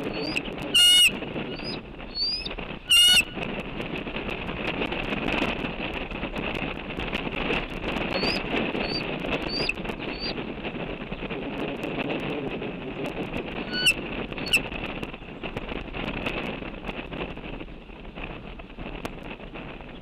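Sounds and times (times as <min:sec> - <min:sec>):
bird chirping: 0:00.0 - 0:03.4, 0:08.1 - 0:10.4, 0:13.7 - 0:14.6
wind buffeting microphone: 0:00.0 - 0:20.0.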